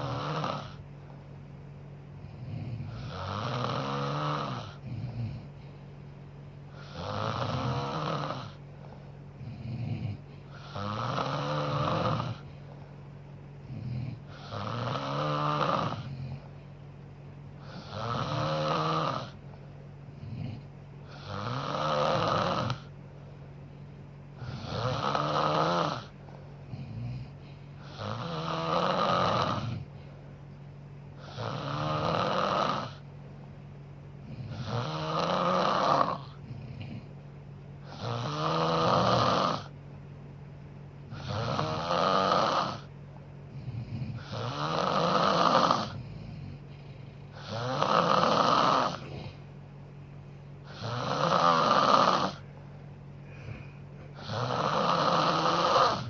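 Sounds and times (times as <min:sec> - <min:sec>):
woman snoring loudly: 0:00.0 - 0:00.8, 0:02.3 - 0:05.5, 0:06.7 - 0:08.6, 0:09.4 - 0:12.4, 0:13.6 - 0:16.4, 0:17.6 - 0:19.4, 0:20.2 - 0:22.9, 0:24.4 - 0:26.1, 0:26.7 - 0:29.9, 0:31.2 - 0:33.0, 0:34.2 - 0:37.1, 0:37.8 - 0:39.7, 0:41.1 - 0:42.9, 0:43.5 - 0:46.6, 0:47.3 - 0:49.4, 0:50.6 - 0:52.4, 0:54.2 - 0:56.0.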